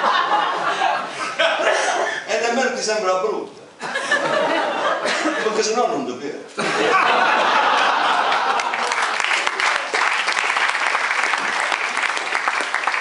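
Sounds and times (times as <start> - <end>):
audience applauding: 7.4 - 13.0.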